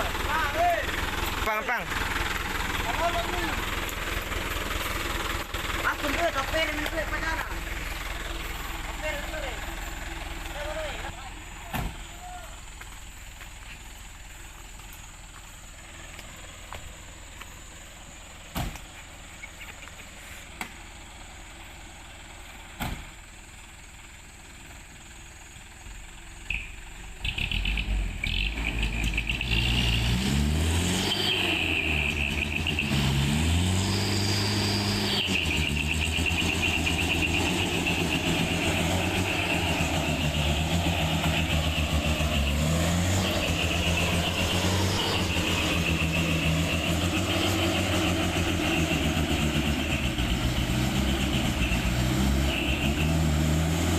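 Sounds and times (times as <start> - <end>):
truck engine revving: 0.0 - 13.2, 26.4 - 53.9
high whine: 31.1 - 53.3.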